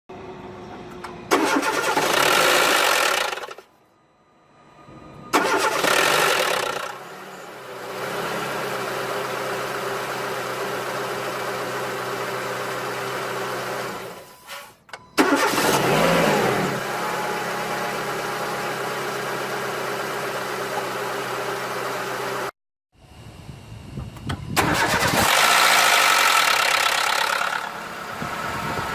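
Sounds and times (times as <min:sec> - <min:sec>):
loud strange engine noise: 0:00.1 - 0:03.7, 0:04.7 - 0:09.4, 0:24.3 - 0:28.9
car engine starting: 0:01.3 - 0:03.7, 0:05.3 - 0:11.1, 0:15.2 - 0:18.3, 0:24.6 - 0:28.9
car engine idling: 0:25.6 - 0:28.9.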